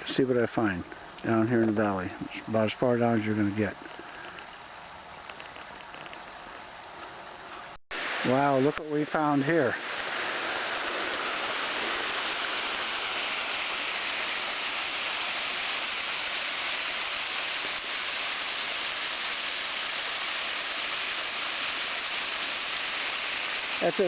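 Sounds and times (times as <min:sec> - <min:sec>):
waterfall pouring into pool: 0:07.9 - 0:24.0.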